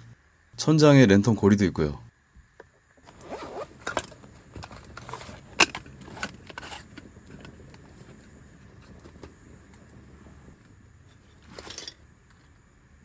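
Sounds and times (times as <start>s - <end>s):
tent zipper being pulled: 3.1s - 9.1s.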